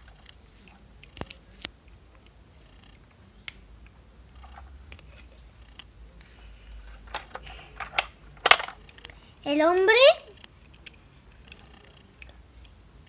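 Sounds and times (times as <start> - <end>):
plastic toy pieces clicking: 7.1 - 9.1.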